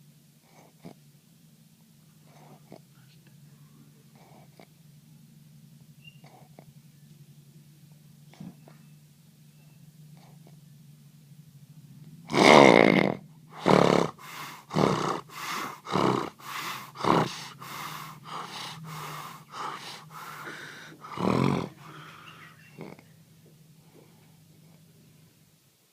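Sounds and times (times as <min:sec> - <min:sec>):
steady low hum: 0:00.0 - 0:25.9
person snoring loudly: 0:12.3 - 0:23.0.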